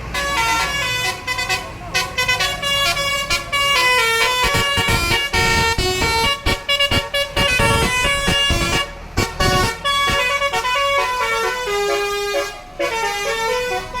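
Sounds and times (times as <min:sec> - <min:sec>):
multi-tone bus horn melody: 0:00.0 - 0:14.0
low thuds: 0:04.5 - 0:09.8.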